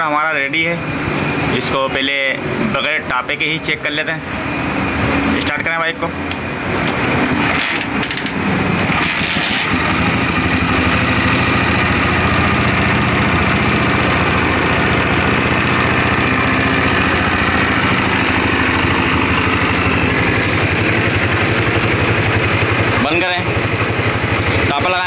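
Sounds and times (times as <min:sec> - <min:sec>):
motorcycle engine starting and idling: 0:06.3 - 0:25.0.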